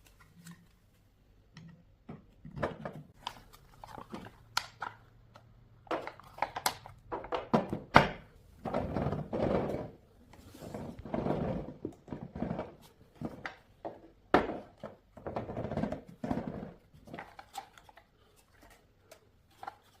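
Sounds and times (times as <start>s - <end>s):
rubbing or scraping: 8.8s - 13.4s.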